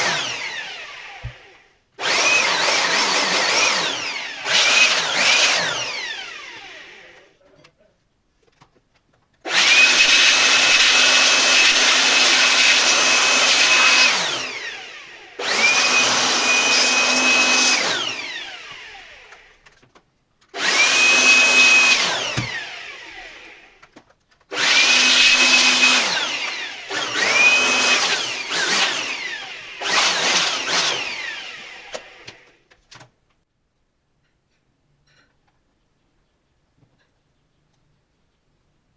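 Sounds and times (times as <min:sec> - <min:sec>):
small electric motor whining: 0:00.0 - 0:07.3, 0:09.5 - 0:19.6, 0:20.6 - 0:23.9, 0:24.6 - 0:32.6.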